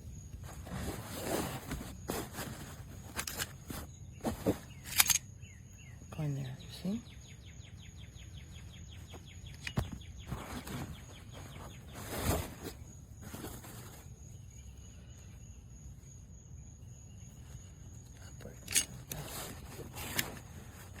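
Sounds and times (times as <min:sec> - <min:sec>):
insects chirping: 0:00.0 - 0:21.0
outdoor background noise: 0:00.0 - 0:21.0
sharp click: 0:04.8 - 0:05.3.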